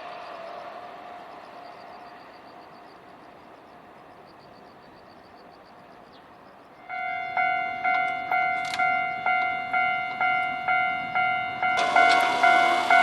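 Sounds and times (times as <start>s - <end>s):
level crossing alarm bell: 6.8s - 13.0s.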